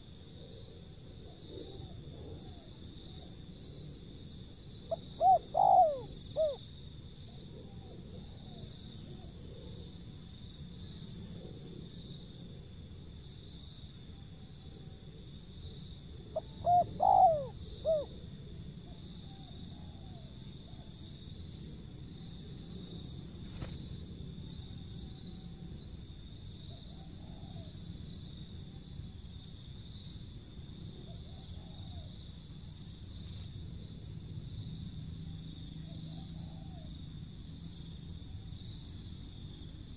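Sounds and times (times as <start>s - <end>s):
dove cooing: 4.9s - 6.6s, 16.3s - 18.2s
faint bird calls: 4.9s - 6.6s, 16.3s - 18.2s.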